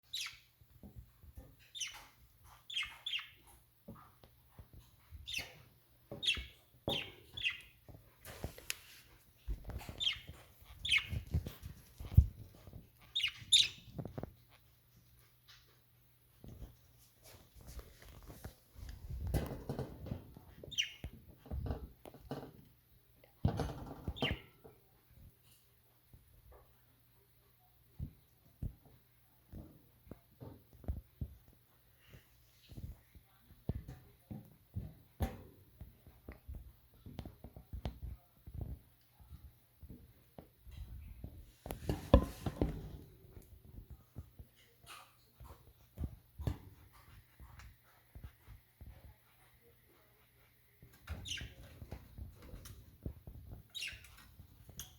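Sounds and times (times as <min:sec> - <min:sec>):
budgerigars chirping: 0:00.1 - 0:00.4, 0:02.7 - 0:03.4, 0:06.2 - 0:07.7, 0:10.0 - 0:11.2, 0:13.1 - 0:13.9
rustling: 0:07.8 - 0:20.6.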